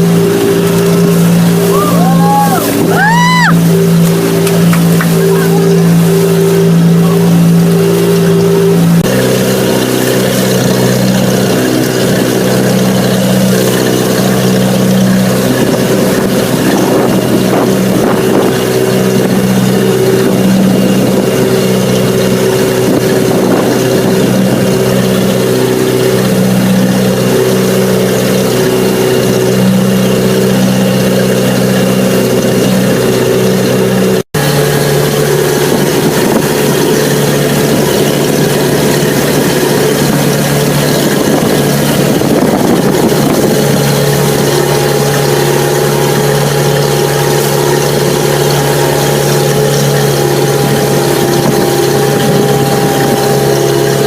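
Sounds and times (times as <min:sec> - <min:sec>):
motorboat engine running: 0:00.0 - 0:54.0
water noise: 0:00.0 - 0:54.0
wind noise: 0:10.2 - 0:27.1, 0:34.8 - 0:54.0.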